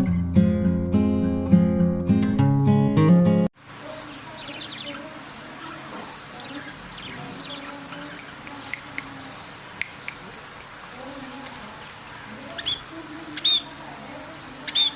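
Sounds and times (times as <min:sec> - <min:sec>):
faint background murmur: 0:03.8 - 0:14.9
parrot chirping: 0:12.2 - 0:13.8, 0:14.5 - 0:14.9.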